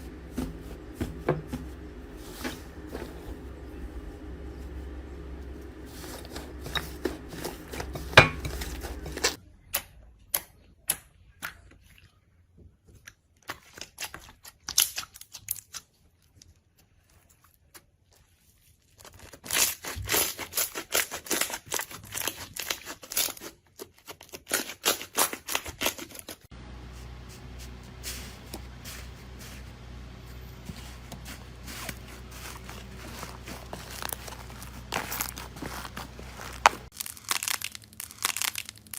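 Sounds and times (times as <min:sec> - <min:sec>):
slime crackling and popping: 0:33.1 - 0:38.9.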